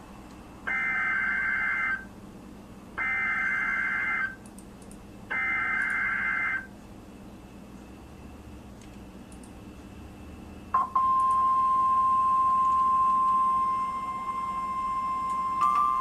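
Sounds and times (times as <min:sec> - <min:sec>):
steady high warning beep: 0:10.8 - 0:16.0.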